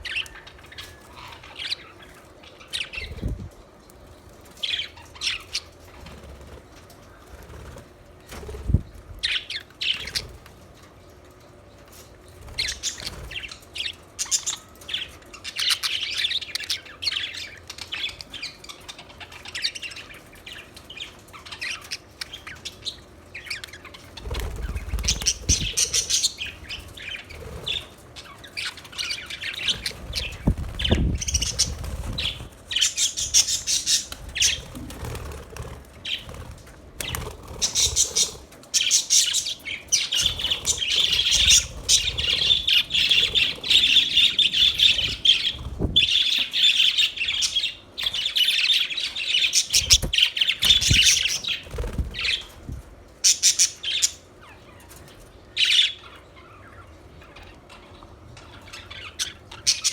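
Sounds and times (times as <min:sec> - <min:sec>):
budgerigars chirping and warbling: 0:00.0 - 0:03.5, 0:04.4 - 0:06.6, 0:08.6 - 0:10.9, 0:12.3 - 0:59.9.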